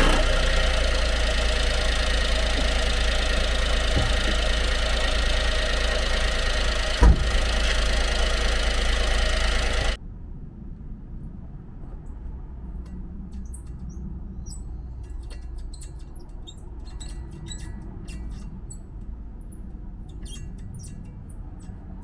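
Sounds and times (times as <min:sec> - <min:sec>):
low steady rumble: 0:00.0 - 0:22.0
high-pitched squeaks and chirps: 0:13.4 - 0:18.9, 0:19.5 - 0:22.0.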